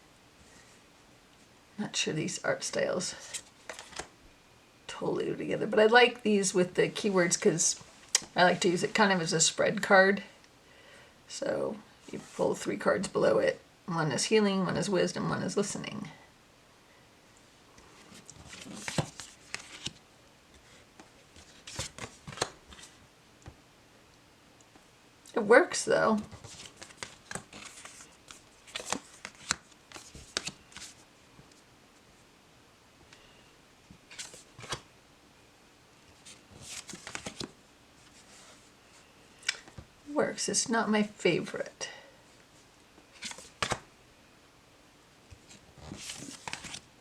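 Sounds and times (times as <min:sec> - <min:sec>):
cards sliding and tapping: 0:18.3 - 0:22.9, 0:26.3 - 0:31.0.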